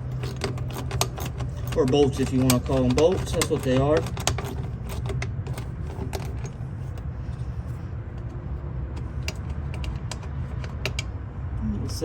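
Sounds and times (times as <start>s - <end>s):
steady low rumble: 0.0s - 12.0s
metallic clicks of screws and tool: 9.0s - 11.1s.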